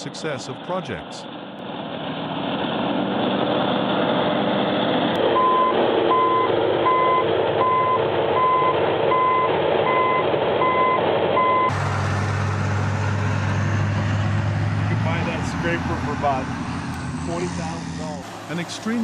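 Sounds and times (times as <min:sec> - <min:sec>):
heavy machine engine running: 0:00.0 - 0:19.0
reversing alarm beeping: 0:05.4 - 0:11.8.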